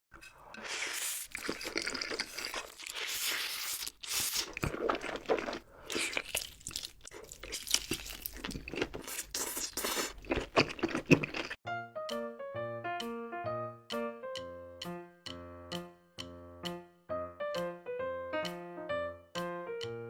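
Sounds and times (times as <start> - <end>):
chewing crispy fried food: 0.2 - 11.6.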